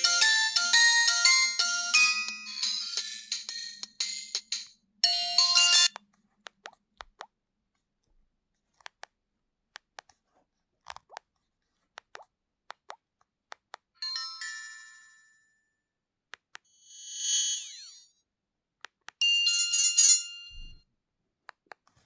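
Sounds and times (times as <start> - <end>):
phone ringtone: 0.0 - 6.0, 14.0 - 15.7, 19.2 - 20.8.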